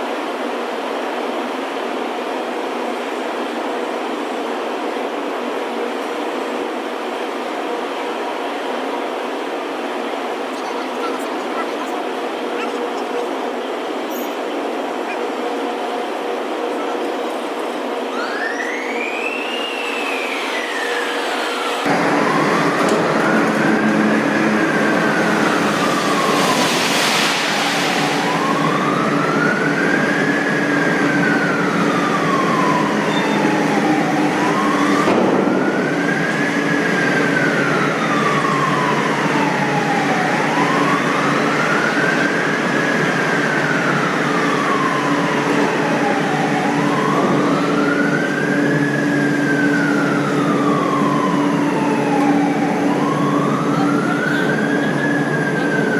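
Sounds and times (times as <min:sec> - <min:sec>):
wailing siren: 0:02.3 - 0:55.9
industrial din: 0:16.4 - 0:55.9.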